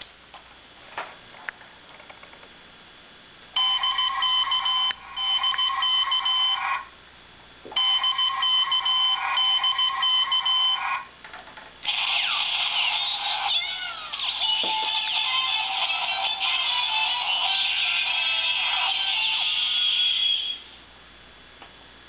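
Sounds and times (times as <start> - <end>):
rapid high electronic beeps: 3.6 - 6.6, 7.8 - 10.9.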